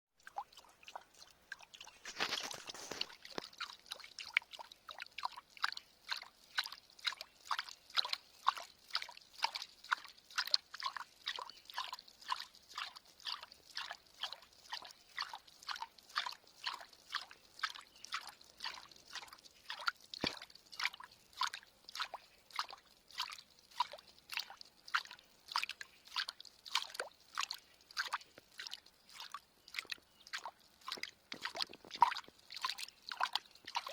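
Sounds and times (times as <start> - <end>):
water sloshing and dripping: 0.2 - 33.9
rush of water: 1.8 - 4.4.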